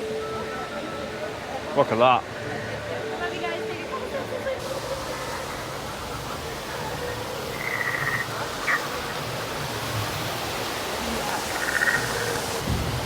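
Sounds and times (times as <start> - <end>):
steady background hiss: 0.0 - 13.0
pulsing frog-like croaking calls: 7.4 - 9.3, 11.0 - 12.6.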